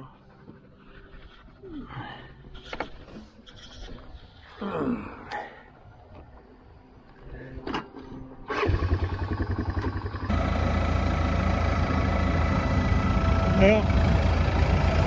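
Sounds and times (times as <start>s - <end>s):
louder engine running: 8.6s - 15.0s
old engine running: 8.6s - 15.0s.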